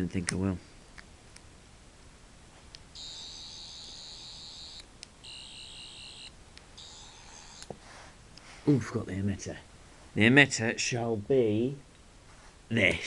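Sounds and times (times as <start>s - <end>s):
toy high-pitched electronic buzz: 3.0s - 7.7s.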